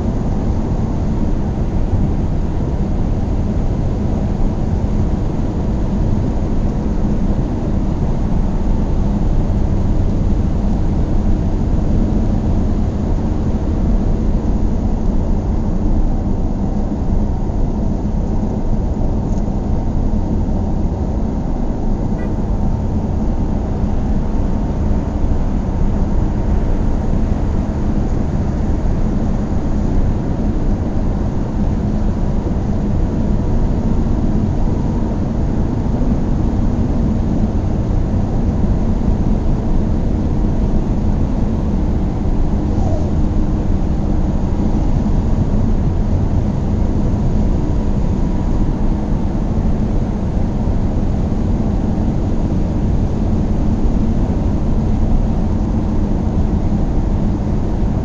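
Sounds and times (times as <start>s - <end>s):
faint steady hum: 0.0s - 58.0s
car engine and road rumble: 21.4s - 27.6s.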